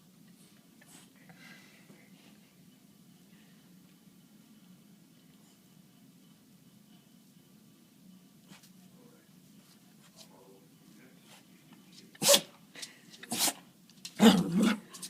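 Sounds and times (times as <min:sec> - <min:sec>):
dog sneezing: 0:12.2 - 0:12.5, 0:13.3 - 0:13.6.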